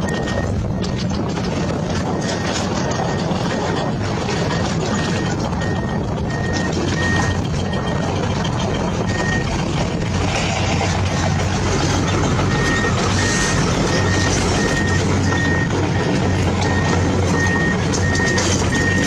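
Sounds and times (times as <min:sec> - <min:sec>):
engine-like noise with low hum: 0:00.0 - 0:19.0
reversing alarm beeping: 0:00.0 - 0:19.0.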